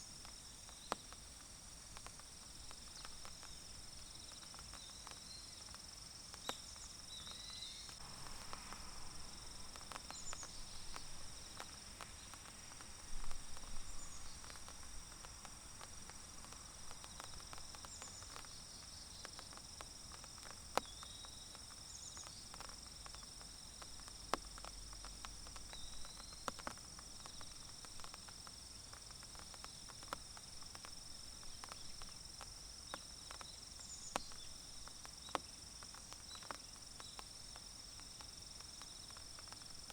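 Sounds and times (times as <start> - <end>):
raindrops pattering on leaves: 0.0 - 39.9
insects shrilling: 6.4 - 21.2.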